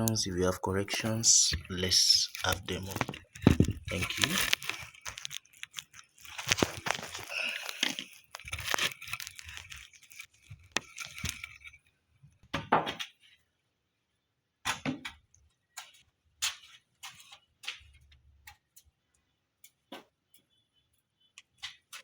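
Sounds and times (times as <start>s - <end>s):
timber rustling and scraping: 0.0s - 11.8s
wood knocks and clinks: 0.9s - 11.8s.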